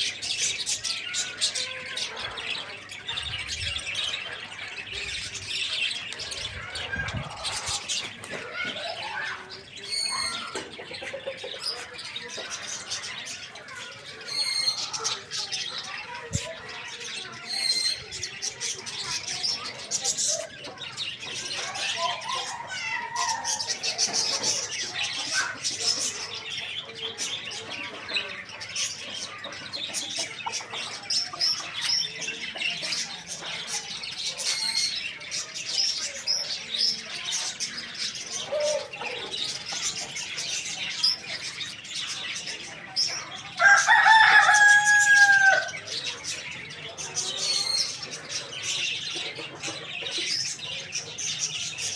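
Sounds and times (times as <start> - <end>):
small birds chirping: 0.0 - 51.9
rooster crowing: 43.6 - 45.8.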